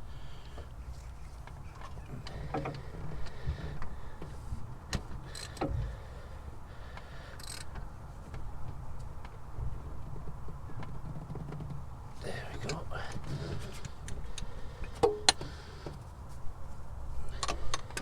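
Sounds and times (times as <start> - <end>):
tools clicking on engine parts: 0.4 - 5.9, 6.9 - 9.4, 12.6 - 16.0, 17.3 - 18.0.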